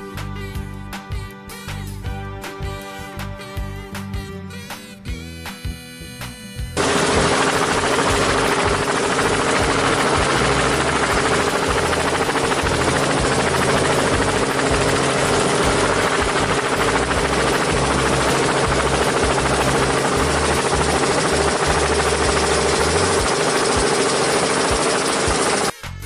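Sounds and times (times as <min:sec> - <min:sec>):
vehicle engine drone: 0:06.8 - 0:25.7.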